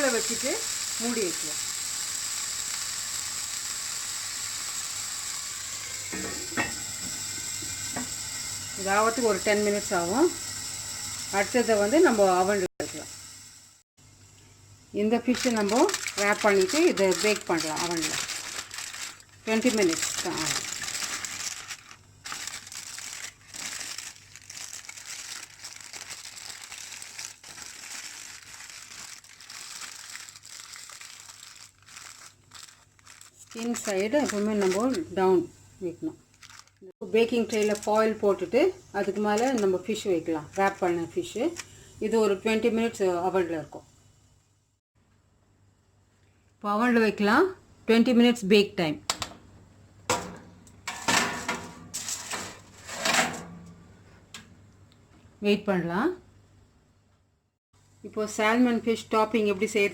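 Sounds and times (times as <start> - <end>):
fish sizzling in a pan: 0.0 - 35.5
aluminium foil crinkling: 15.1 - 35.2, 36.3 - 39.9, 51.0 - 53.1.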